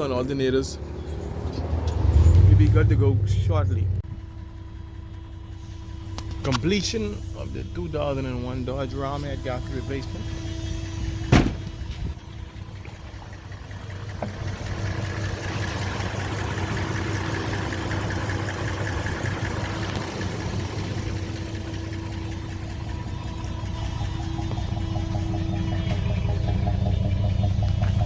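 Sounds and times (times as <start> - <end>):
engine idling: 0.0 - 28.0.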